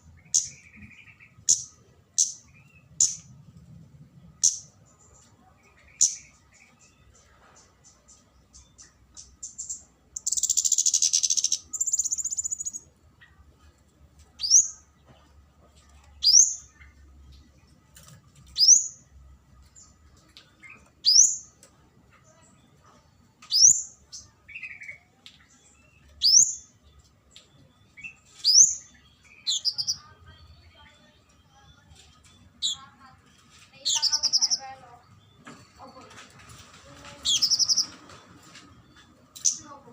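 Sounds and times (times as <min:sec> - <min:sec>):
bird chattering trill: 0:09.2 - 0:12.8, 0:29.4 - 0:30.1, 0:33.8 - 0:34.8, 0:37.2 - 0:38.0.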